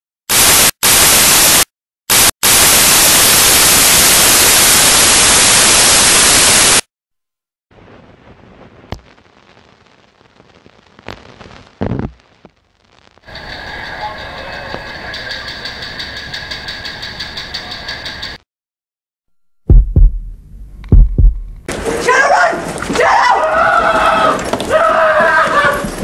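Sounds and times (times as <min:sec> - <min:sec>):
static hiss: 0:00.3 - 0:06.8, 0:07.8 - 0:13.5.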